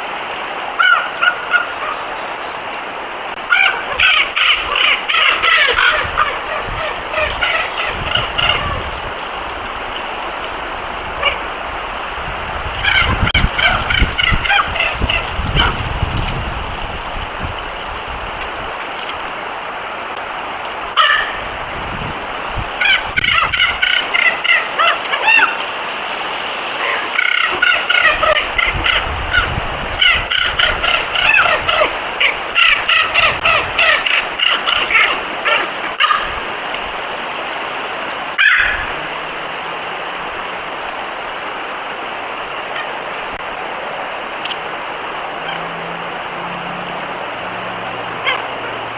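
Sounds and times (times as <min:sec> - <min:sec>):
steady background hiss: 0:00.0 - 0:48.9
high-pitched animal cries: 0:03.5 - 0:08.8, 0:38.4 - 0:39.3.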